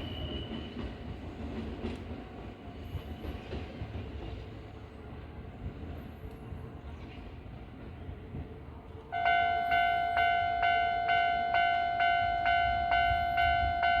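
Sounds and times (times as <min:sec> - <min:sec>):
level crossing warning bell: 0:09.1 - 0:14.0.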